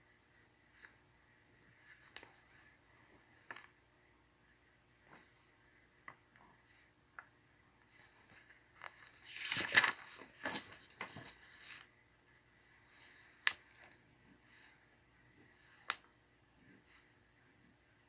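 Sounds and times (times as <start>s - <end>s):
paper rustling: 7.9s - 11.9s.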